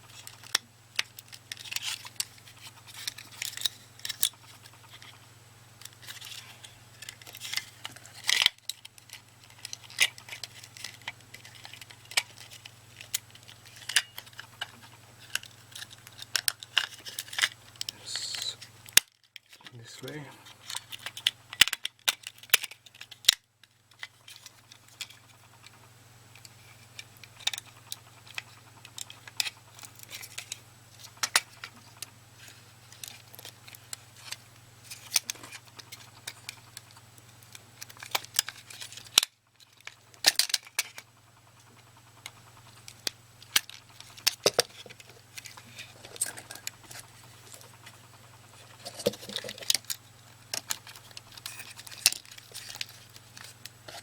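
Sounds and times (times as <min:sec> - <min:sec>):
steady low hum: 0:00.0 - 0:54.0
plastic mouse parts clicking: 0:33.0 - 0:54.0.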